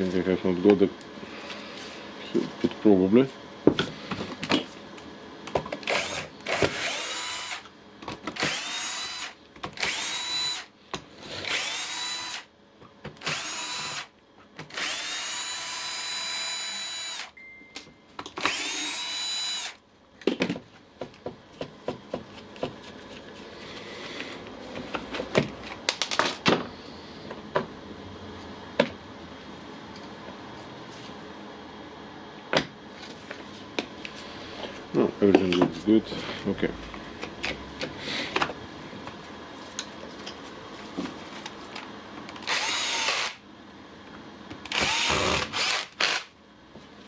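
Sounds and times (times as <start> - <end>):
impact wrench motor whine: 5.8 - 7.7, 8.4 - 10.7, 11.4 - 12.5, 13.2 - 17.4, 18.4 - 19.8, 42.4 - 43.4, 44.6 - 46.3.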